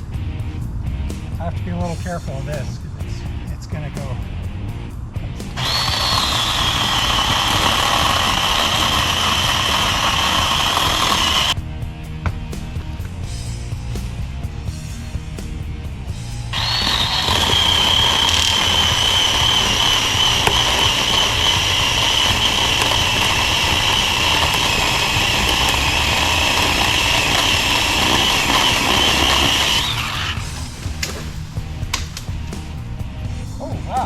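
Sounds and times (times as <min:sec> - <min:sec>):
background music: 0:00.0 - 0:34.0
chainsaw cutting tree trunk: 0:05.6 - 0:11.6, 0:16.5 - 0:32.5.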